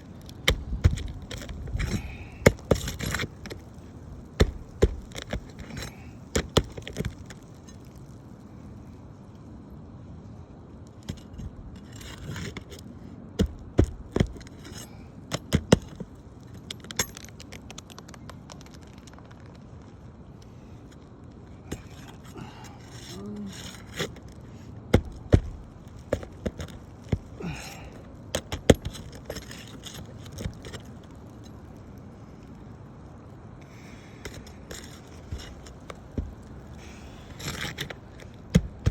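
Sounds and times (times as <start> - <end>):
scraping on roof shingle: 0.0 - 8.1, 11.0 - 17.8, 21.6 - 31.4, 33.6 - 38.9
metal tools clicking and knocking: 14.3 - 18.0.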